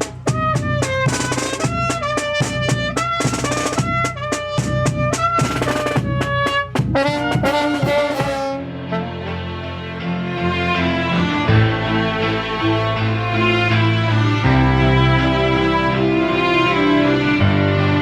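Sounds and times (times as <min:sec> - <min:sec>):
snare and bass drums: 0:00.0 - 0:08.6
trumpets playing a melody: 0:00.3 - 0:09.4.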